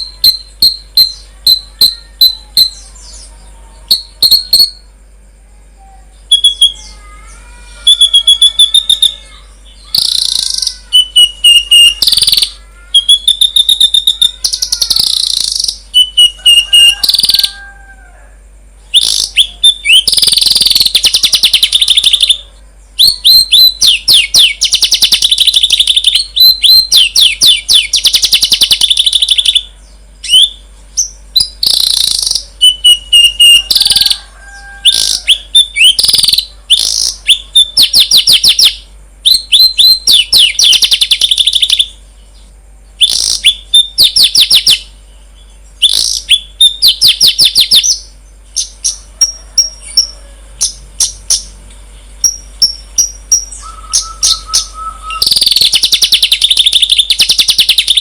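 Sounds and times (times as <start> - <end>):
songbird trilling and whistling: 0.0 - 5.0, 6.1 - 17.9, 18.8 - 51.6, 52.2 - 58.0.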